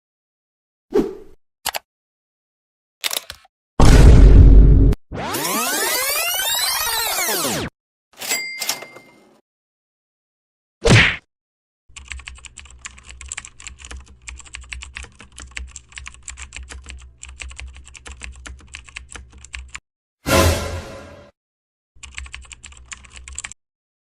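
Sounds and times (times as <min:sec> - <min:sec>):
computer keyboard typing: 0:03.0 - 0:03.5, 0:11.9 - 0:19.8, 0:22.0 - 0:23.6.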